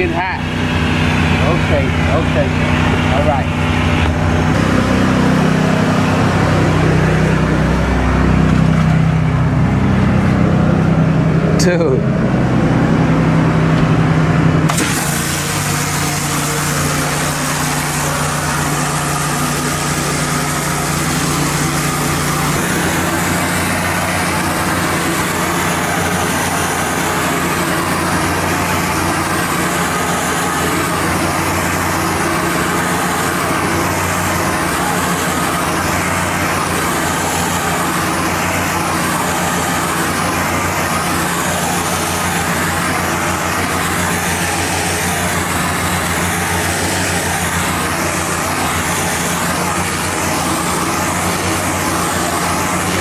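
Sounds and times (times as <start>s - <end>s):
pressure washer running: 0.0s - 53.0s
water spray hissing on concrete: 14.7s - 53.0s.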